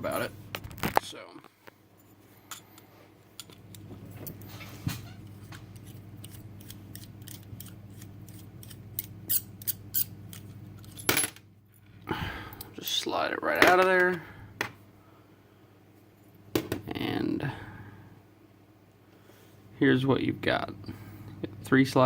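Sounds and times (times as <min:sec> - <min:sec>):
steady low hum: 0:00.0 - 0:22.0
small metal clicks and scrapes: 0:05.4 - 0:11.1.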